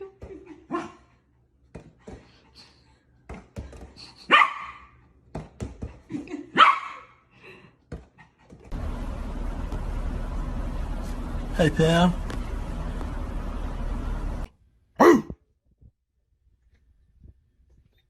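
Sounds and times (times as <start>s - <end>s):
dog barking loudly: 4.3s - 4.8s, 6.6s - 7.1s, 15.0s - 15.3s.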